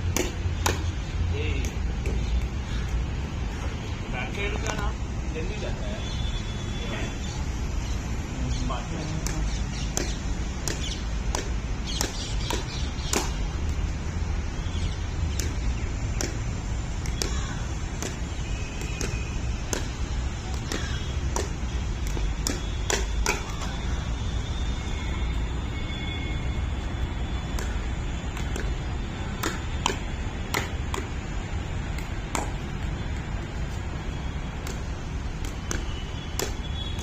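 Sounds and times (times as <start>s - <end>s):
paddles hitting plastic ball: 0.1s - 0.9s, 9.2s - 13.9s, 15.2s - 23.8s, 27.4s - 32.8s, 34.5s - 37.0s.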